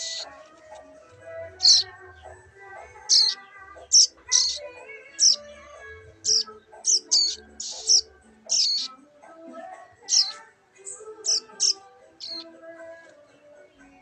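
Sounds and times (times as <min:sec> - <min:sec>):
bird chick chirping: 0:00.0 - 0:09.0, 0:10.0 - 0:13.1
background music: 0:00.0 - 0:14.0.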